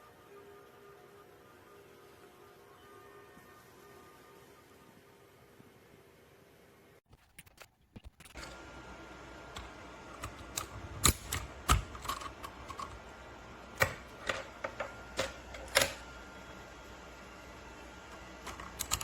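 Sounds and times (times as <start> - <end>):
mechanical keyboard key clacks: 9.6 - 13.0, 18.4 - 19.0.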